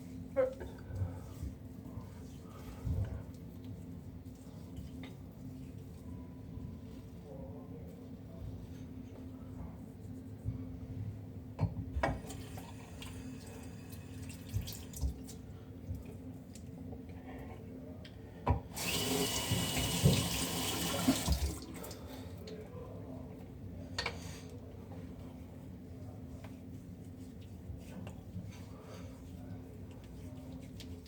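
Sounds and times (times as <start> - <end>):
sink tap running: 18.7 - 21.9.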